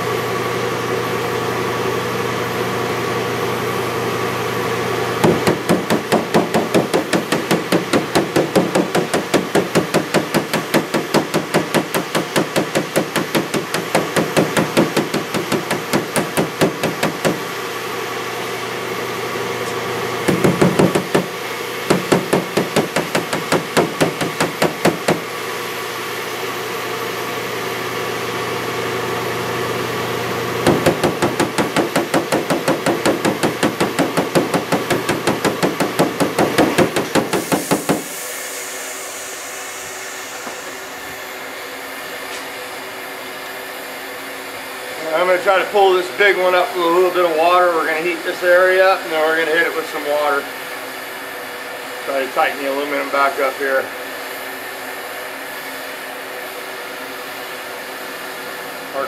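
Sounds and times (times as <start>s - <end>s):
hammer tapping on metal hood: 5.2s - 17.5s, 20.3s - 21.3s, 21.9s - 25.3s, 30.6s - 38.1s.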